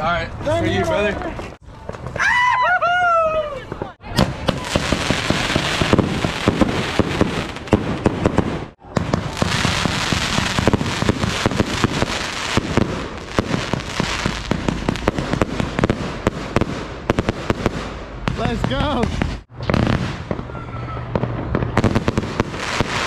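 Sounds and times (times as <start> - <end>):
fireworks banging and crackling: 0.0 - 23.0.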